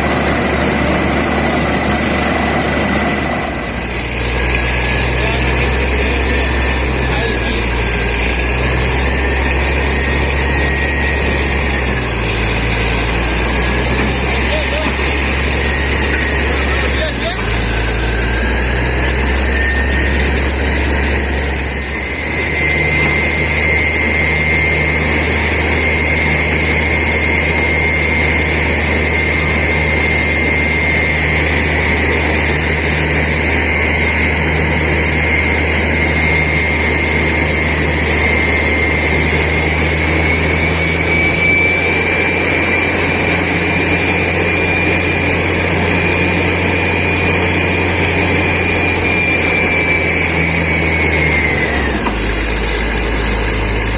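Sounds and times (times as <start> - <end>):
air compressor whine: 0.0 - 53.9
drilling rig engine drone: 0.0 - 53.9.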